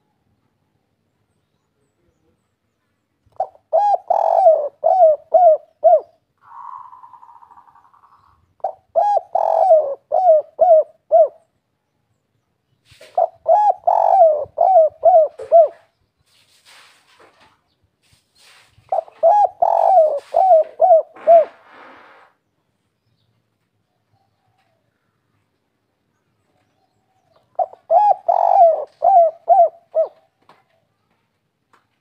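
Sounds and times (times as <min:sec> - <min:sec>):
dove cooing: 0:03.3 - 0:11.5, 0:13.0 - 0:15.9, 0:18.9 - 0:22.2, 0:27.2 - 0:30.4.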